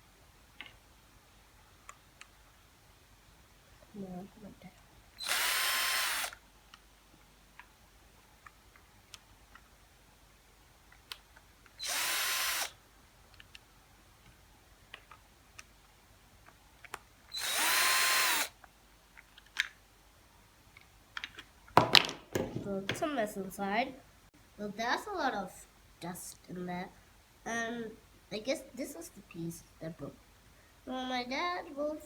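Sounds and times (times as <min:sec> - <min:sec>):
power drill motor whine: 0:05.2 - 0:06.4, 0:11.8 - 0:12.8, 0:17.3 - 0:18.6.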